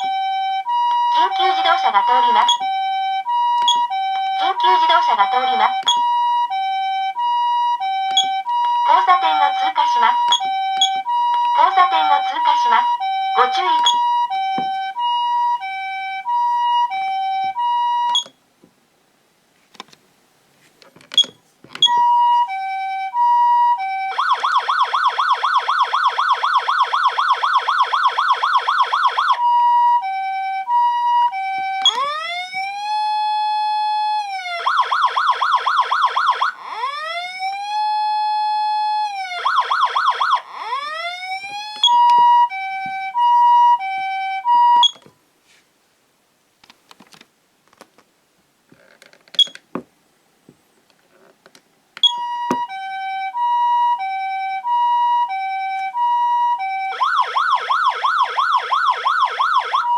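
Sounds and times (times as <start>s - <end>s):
two-tone ambulance siren: 0.0s - 18.3s, 21.8s - 45.0s, 52.0s - 59.9s
wailing motor siren: 0.0s - 18.3s, 21.8s - 45.0s, 52.1s - 59.9s
fast warbling siren tone: 0.7s - 6.1s, 7.9s - 15.1s, 31.8s - 32.7s, 34.5s - 37.6s, 39.2s - 44.0s.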